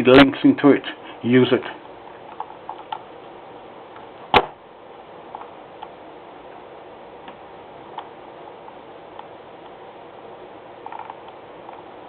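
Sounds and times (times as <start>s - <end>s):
steady low hiss: 0.0s - 12.0s
sharp loud click: 4.3s - 4.6s.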